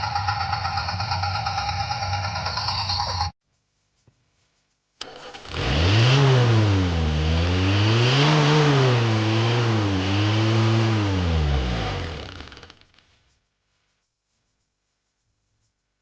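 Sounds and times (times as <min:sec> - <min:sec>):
toy engine sound effect revving: 0:05.1 - 0:12.8.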